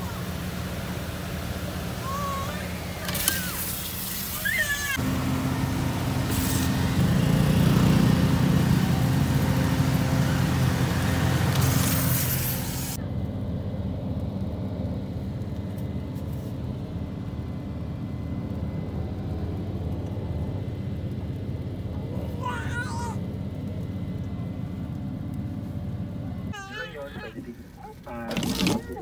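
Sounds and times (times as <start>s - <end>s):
loud rushing hiss: 0.0s - 13.0s
car engine idling hum: 0.0s - 29.0s.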